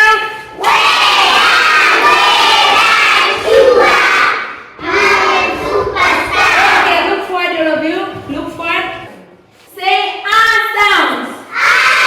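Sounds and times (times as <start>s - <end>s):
children reading aloud in unison: 0.0s - 7.5s, 11.4s - 12.0s.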